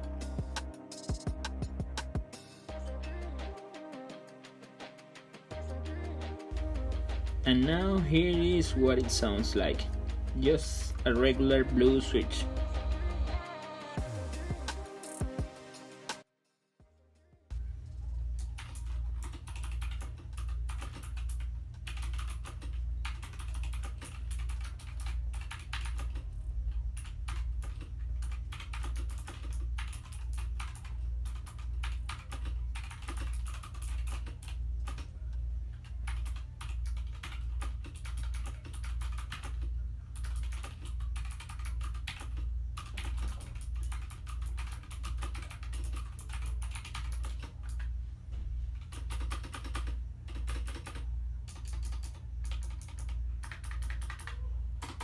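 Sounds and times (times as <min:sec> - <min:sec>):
mechanical keyboard typing: 0:18.4 - 0:26.3, 0:27.0 - 0:35.2, 0:35.8 - 0:47.9, 0:48.8 - 0:55.0.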